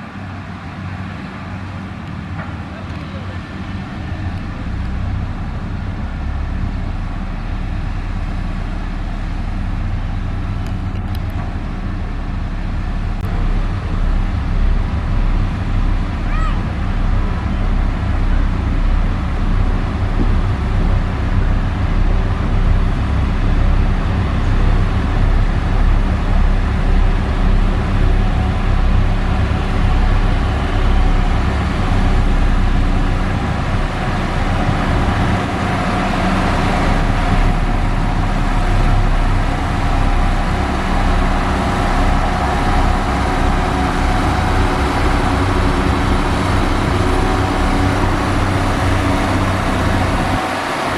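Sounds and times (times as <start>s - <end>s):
heavy diesel engine droning: 0.0s - 50.9s.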